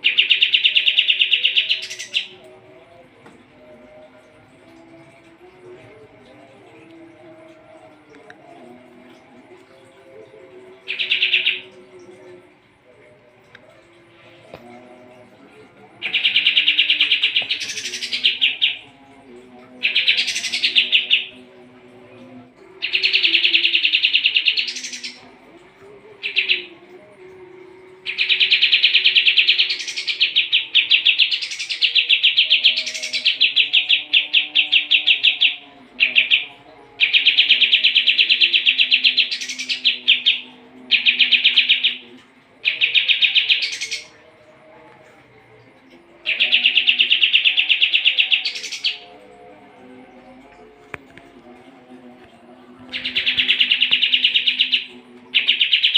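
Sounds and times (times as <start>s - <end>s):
bird singing rattling trills: 52.9s - 55.9s.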